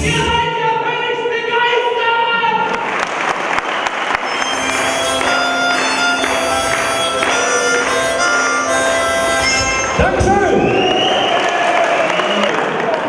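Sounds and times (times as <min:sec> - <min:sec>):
melody of held notes: 0:04.2 - 0:10.2.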